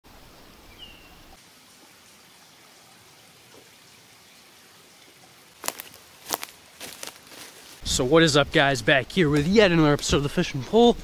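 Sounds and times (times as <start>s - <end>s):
creek trickling: 0.1s - 7.9s.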